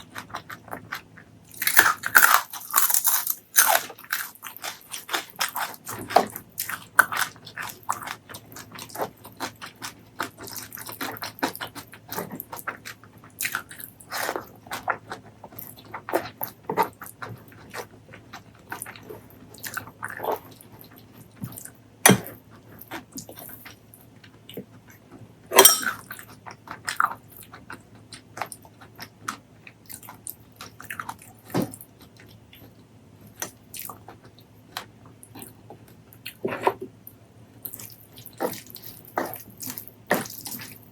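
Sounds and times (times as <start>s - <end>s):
crunchy chewing and biting: 0.0s - 23.8s, 37.6s - 40.9s.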